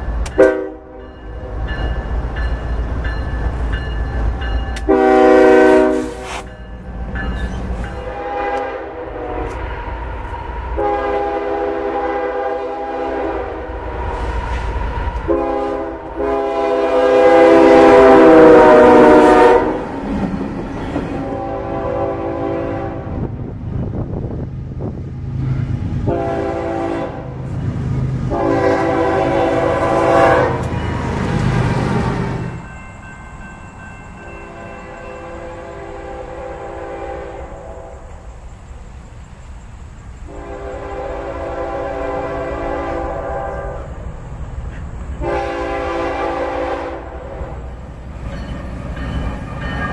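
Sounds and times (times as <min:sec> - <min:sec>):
low rumble of train: 0:00.0 - 0:49.9
locomotive air horn blasts: 0:00.3 - 0:01.0, 0:04.8 - 0:06.6, 0:07.9 - 0:09.9, 0:10.8 - 0:13.7, 0:15.3 - 0:19.9, 0:21.2 - 0:23.3, 0:26.0 - 0:27.4, 0:28.3 - 0:30.8, 0:34.5 - 0:38.1, 0:40.3 - 0:44.0, 0:45.2 - 0:47.3.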